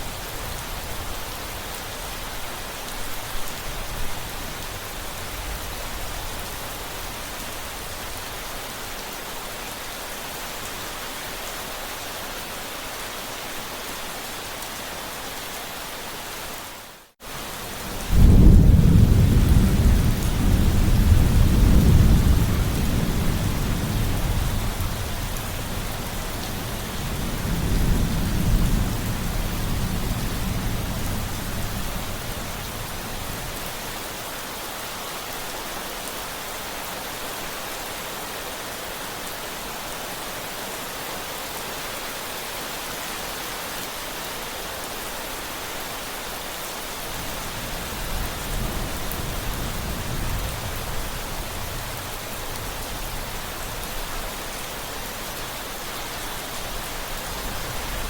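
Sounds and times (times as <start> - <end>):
steady rain: 0.0 - 58.0
thunder rumbling: 17.8 - 33.4.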